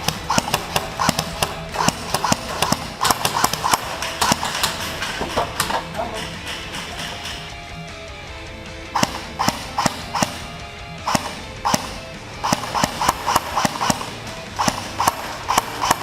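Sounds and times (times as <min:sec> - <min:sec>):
airsoft gun shots: 0:00.0 - 0:07.6, 0:08.9 - 0:16.0
faint background music: 0:00.0 - 0:16.0.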